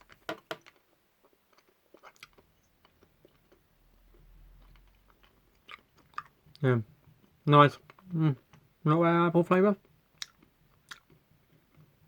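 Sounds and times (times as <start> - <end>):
faint low hum: 0.0 - 12.0
chewing sweet: 0.7 - 6.7, 10.1 - 11.9.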